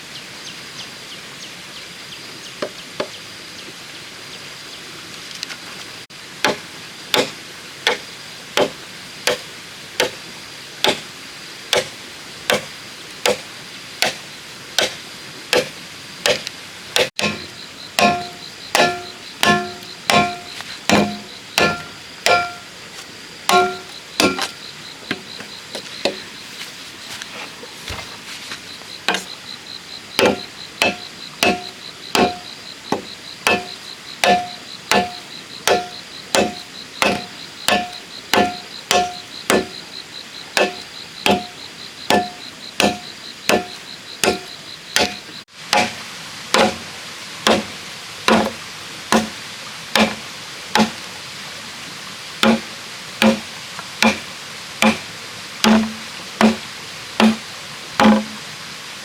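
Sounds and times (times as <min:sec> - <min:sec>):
chopping strokes on bamboo: 0:06.4 - 0:08.0, 0:08.6 - 0:10.2, 0:10.8 - 0:11.1, 0:11.7 - 0:29.4, 0:30.2 - 0:39.9, 0:40.6 - 0:51.1, 0:52.4 - 0:57.4, 0:58.0 - 0:58.4
pulsing insect drone: 0:17.1 - 0:45.5.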